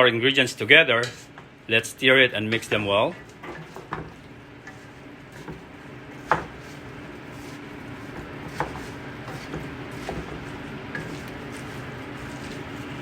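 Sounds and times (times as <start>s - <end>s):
steady hum: 0.0s - 13.0s
spoon stirring in a pot: 2.5s - 13.0s.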